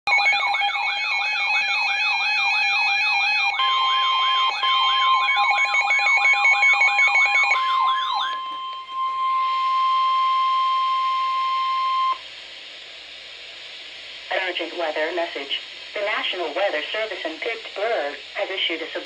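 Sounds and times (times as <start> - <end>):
long steady alert tone: 0.1 - 12.2
steady beeping tones: 3.5 - 12.2.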